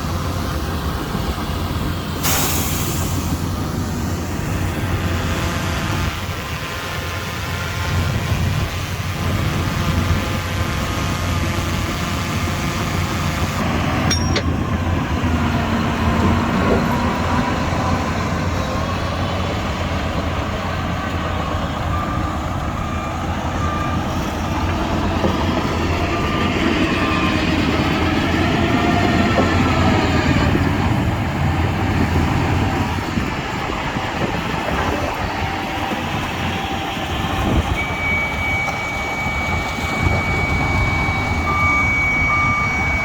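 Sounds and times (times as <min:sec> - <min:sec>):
bulldozer diesel engine running: 0:00.0 - 0:43.0
sharp metal clank: 0:14.0 - 0:14.6.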